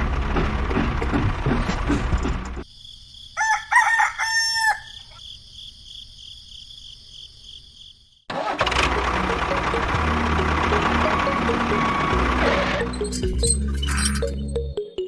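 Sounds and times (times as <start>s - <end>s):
rooster crowing: 3.4s - 5.2s.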